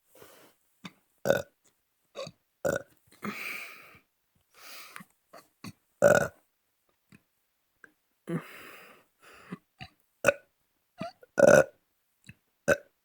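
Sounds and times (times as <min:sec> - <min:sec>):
person burping: 0:02.2 - 0:03.4, 0:11.0 - 0:11.8.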